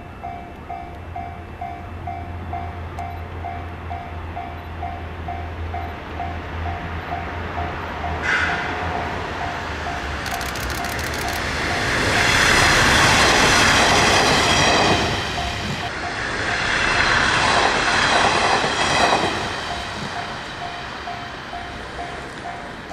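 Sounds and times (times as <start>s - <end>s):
level crossing warning bell: 0.0s - 10.2s, 19.4s - 22.9s
diesel railcar passing: 0.0s - 22.9s.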